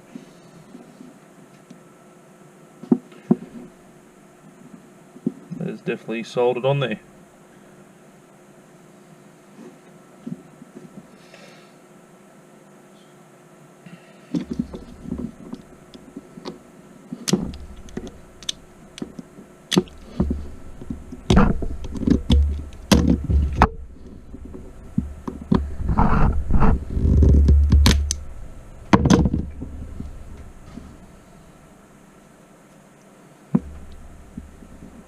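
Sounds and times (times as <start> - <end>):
cable being moved about: 14.4 - 28.3
tools clicking and knocking: 17.2 - 23.8.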